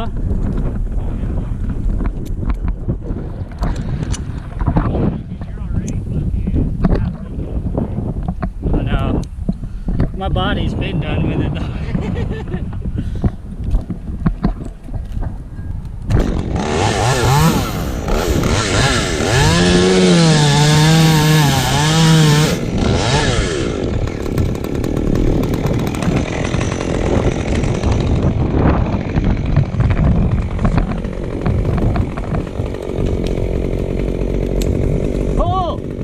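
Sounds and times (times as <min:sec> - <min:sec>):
chainsaw cutting wood: 0:16.0 - 0:36.0.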